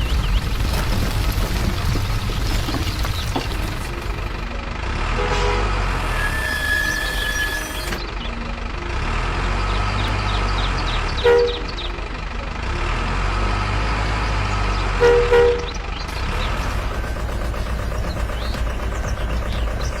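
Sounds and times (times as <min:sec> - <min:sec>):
engine rumble: 0:00.0 - 0:20.0
horn honking: 0:04.9 - 0:08.0, 0:11.0 - 0:11.8, 0:14.8 - 0:15.8.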